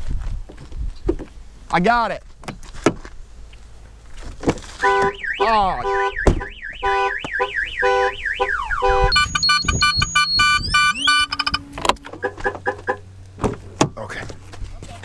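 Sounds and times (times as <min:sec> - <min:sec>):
car alarm siren: 0:04.8 - 0:13.0.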